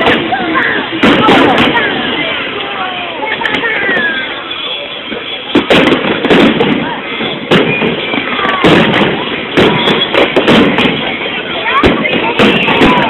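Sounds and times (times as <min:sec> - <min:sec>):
fireworks crackling: 0:00.0 - 0:13.0
firework shells bursting: 0:04.5 - 0:13.0.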